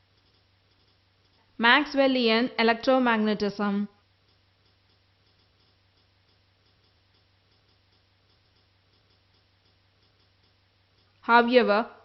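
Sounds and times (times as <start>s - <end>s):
small regular ticks: 0.0s - 1.6s, 4.0s - 11.3s.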